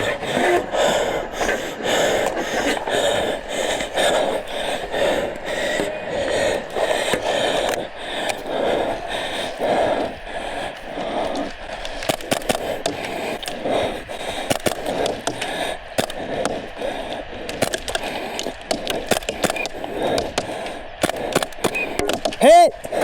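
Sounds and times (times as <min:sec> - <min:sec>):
rustling movement: 0:00.0 - 0:21.3
airsoft guns firing: 0:17.5 - 0:22.5.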